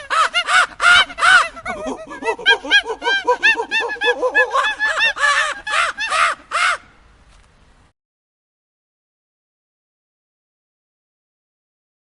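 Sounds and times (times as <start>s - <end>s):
birds calling: 0.0s - 6.9s.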